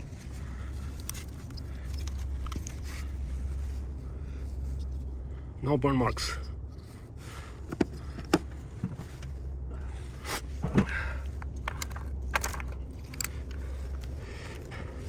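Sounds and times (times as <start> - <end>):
steady low hum: 0.0 - 15.0
hand tools clicking and knocking: 10.6 - 14.6.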